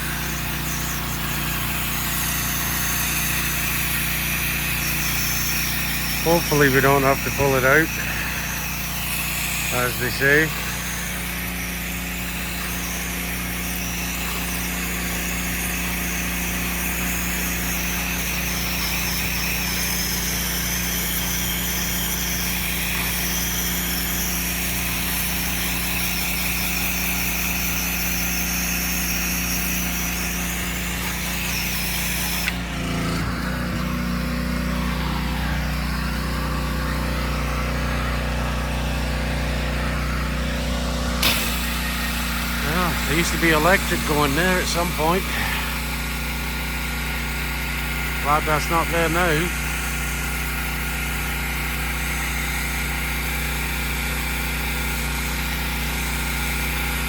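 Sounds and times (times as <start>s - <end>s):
hissing water spray: 0.0s - 57.0s
pump machine hum: 0.0s - 57.0s.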